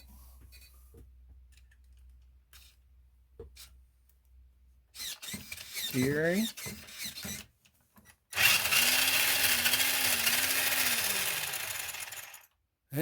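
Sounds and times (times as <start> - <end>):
servo electric whirring: 8.3 - 12.5.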